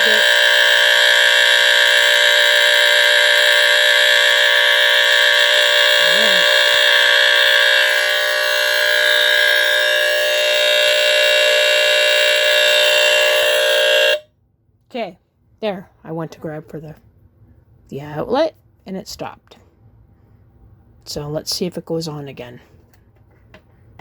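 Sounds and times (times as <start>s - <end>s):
smoke alarm squealing: 0.0s - 14.2s.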